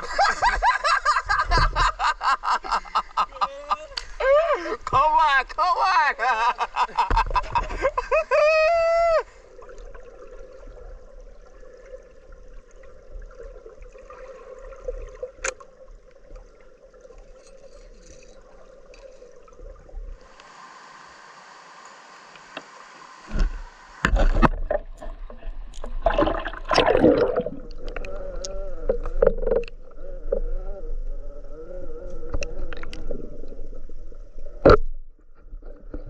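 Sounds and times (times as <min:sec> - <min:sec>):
muffled river water gurgling: 0:00.0 - 0:36.0
person calling out: 0:03.4 - 0:06.4.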